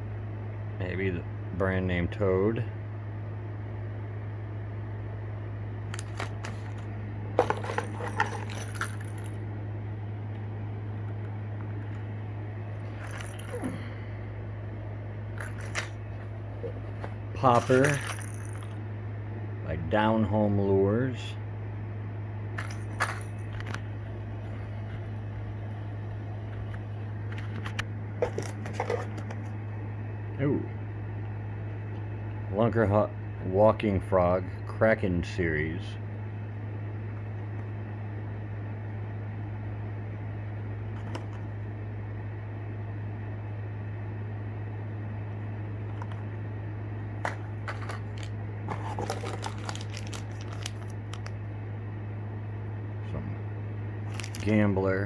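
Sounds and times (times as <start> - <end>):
steady low hum: 0.0 - 55.0
plastic packaging clicking and rattling: 5.9 - 6.8, 7.4 - 9.4, 15.4 - 16.0, 16.6 - 18.7, 22.6 - 23.8, 41.0 - 41.5, 45.9 - 46.2, 47.2 - 51.4, 54.1 - 54.5.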